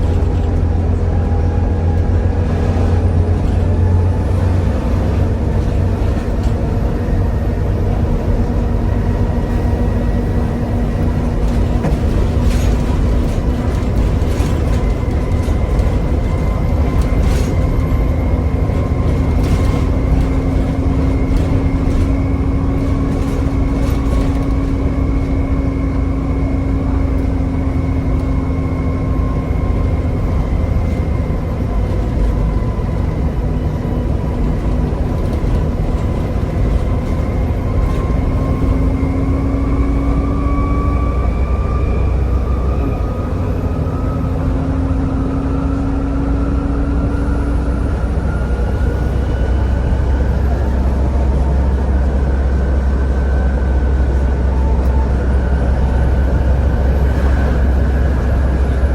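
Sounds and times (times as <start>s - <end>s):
bus diesel engine droning: 0.0s - 58.9s
body rattles and knocks: 9.6s - 28.4s, 29.2s - 40.1s.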